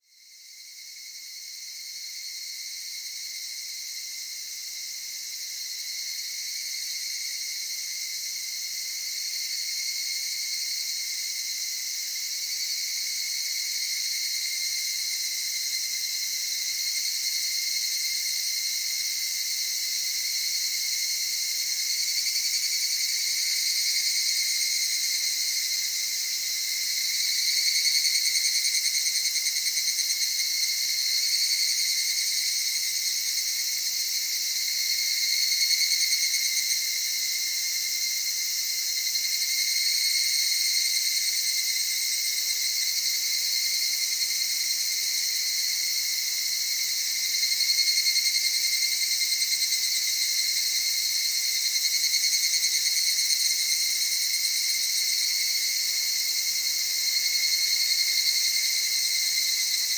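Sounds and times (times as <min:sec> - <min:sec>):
cicadas trilling: 0:00.4 - 0:59.9.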